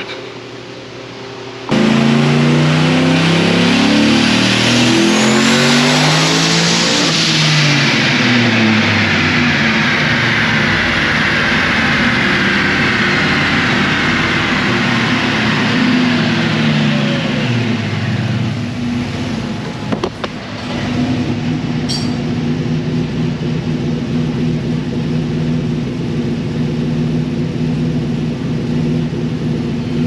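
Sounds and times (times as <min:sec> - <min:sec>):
truck engine revving at full throttle: 0:01.7 - 0:30.0
turbo whine: 0:07.0 - 0:26.4.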